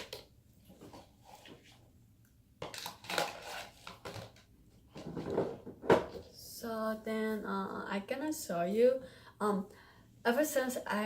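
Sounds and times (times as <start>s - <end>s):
items crinkling and rustling: 0.0s - 1.9s, 2.6s - 6.4s.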